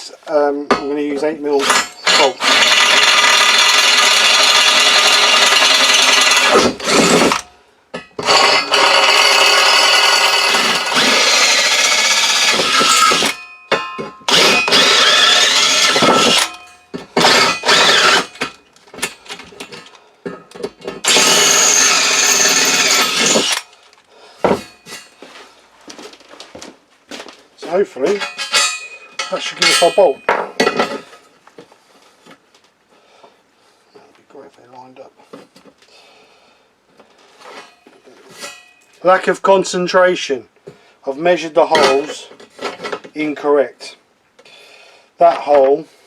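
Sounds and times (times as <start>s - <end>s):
electric drill boring through steel: 1.6s - 7.5s, 8.2s - 13.4s, 14.3s - 18.6s, 21.0s - 23.7s.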